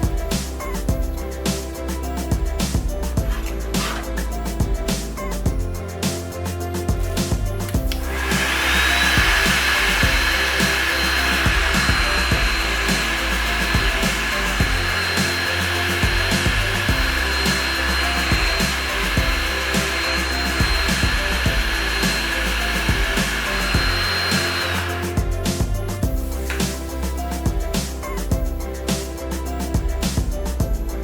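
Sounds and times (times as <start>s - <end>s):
music with beat and bass: 0.0s - 31.0s
blower motor hiss and whine: 6.0s - 30.3s.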